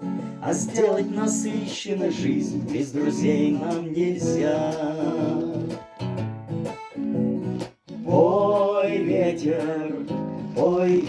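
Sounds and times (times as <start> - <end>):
acoustic guitar strumming: 0.0 - 11.0
voices singing: 0.4 - 5.9, 8.0 - 11.0.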